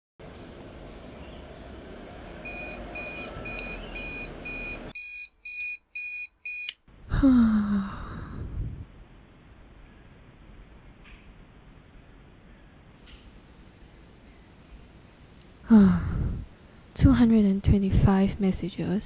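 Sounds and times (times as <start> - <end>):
faint hum: 0.2 - 5.1, 6.5 - 19.0
electronic alarm beeping: 2.3 - 6.8.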